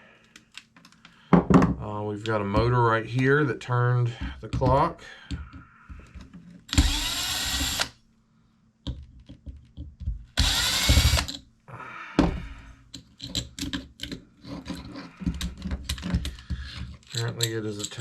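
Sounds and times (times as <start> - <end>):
power drill motor running: 6.7 - 7.9, 10.4 - 11.3
small parts clicking and rattling: 12.9 - 18.0.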